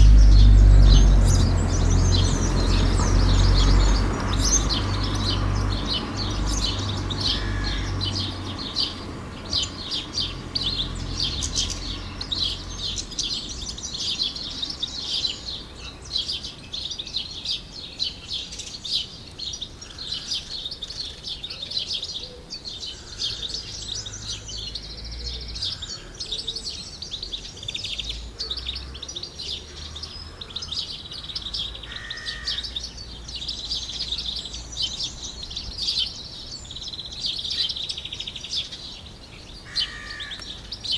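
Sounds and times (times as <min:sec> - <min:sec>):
low rumble: 0:00.0 - 0:04.1
birds chirping and singing: 0:00.0 - 0:40.9.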